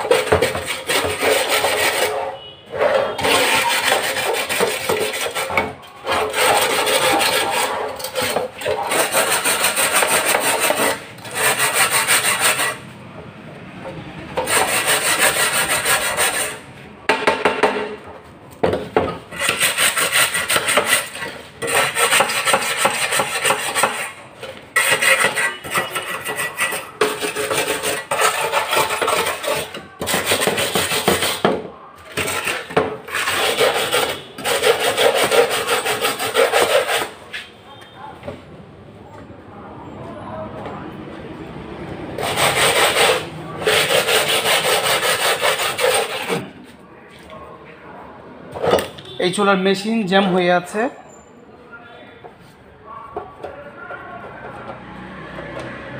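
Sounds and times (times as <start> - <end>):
scraping on metal stove parts: 0.0 - 12.8, 17.6 - 37.5.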